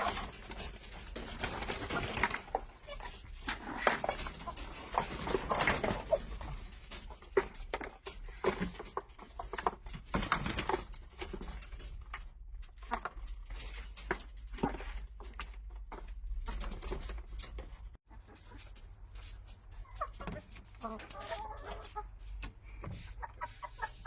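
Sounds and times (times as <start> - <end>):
chickens clucking: 0.0 - 12.0, 18.1 - 24.0
taps scratching and rustling: 0.0 - 24.0.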